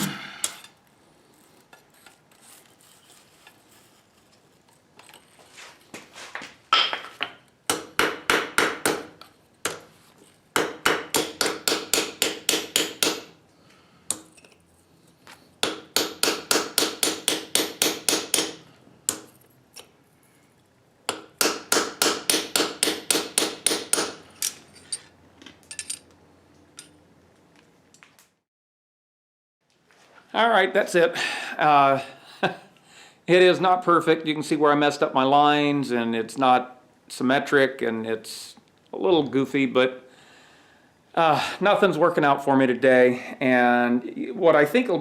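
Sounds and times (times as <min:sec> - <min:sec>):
hammer striking steel on anvil: 0:10.6 - 0:13.3, 0:15.6 - 0:19.3, 0:21.1 - 0:24.6.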